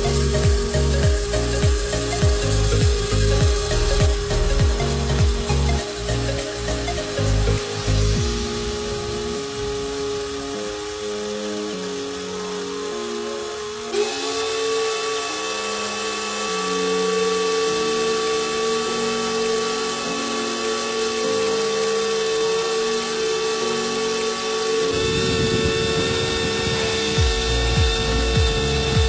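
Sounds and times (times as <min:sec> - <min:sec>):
background music with bass line: 0:00.0 - 0:10.3, 0:25.0 - 0:29.0
music beat: 0:00.0 - 0:12.9, 0:26.1 - 0:29.0
small electric motor whining: 0:00.0 - 0:29.0.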